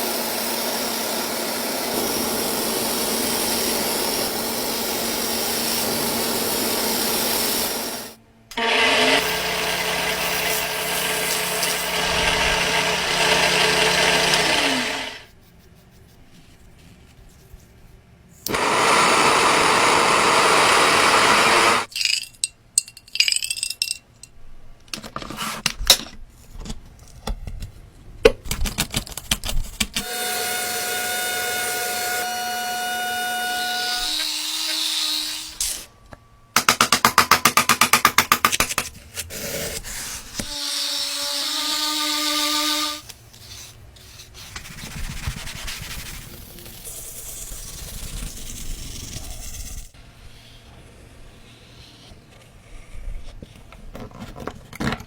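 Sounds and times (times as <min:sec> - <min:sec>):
steady motor whine: 0:00.8 - 0:15.2, 0:18.5 - 0:21.9.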